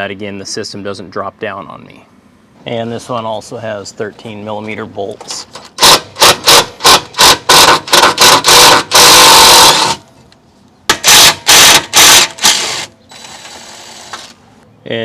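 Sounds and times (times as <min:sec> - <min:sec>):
power tool trigger pulses: 0:05.8 - 0:10.0, 0:11.0 - 0:14.4.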